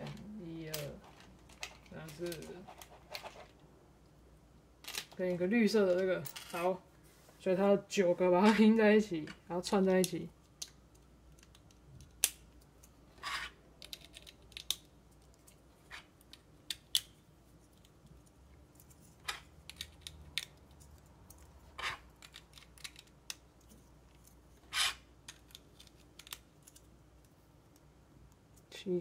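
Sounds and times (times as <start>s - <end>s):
plastic pieces clicking: 10.0s - 12.4s, 13.8s - 15.6s, 19.3s - 21.4s, 22.1s - 23.4s, 24.8s - 26.9s.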